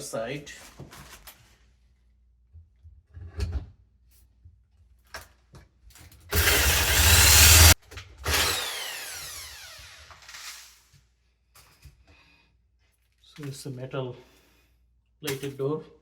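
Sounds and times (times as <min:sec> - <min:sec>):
power drill cutting metal: 0:06.3 - 0:10.8.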